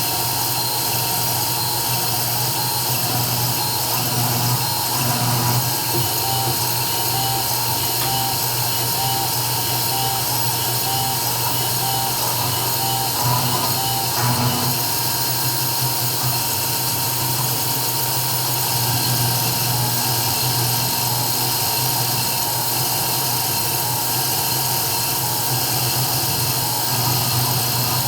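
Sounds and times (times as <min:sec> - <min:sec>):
spindle motor whine: 0:00.4 - 0:15.0
short repeating tone: 0:06.0 - 0:14.7.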